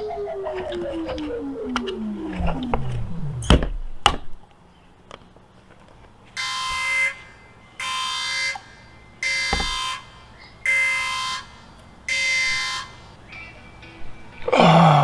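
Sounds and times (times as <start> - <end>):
electronic alarm beeping: 6.4 - 14.0.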